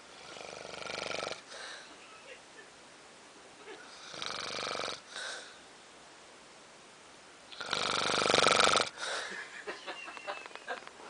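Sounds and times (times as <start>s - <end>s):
person snoring: 0.1s - 1.9s, 3.9s - 5.6s, 7.5s - 9.2s.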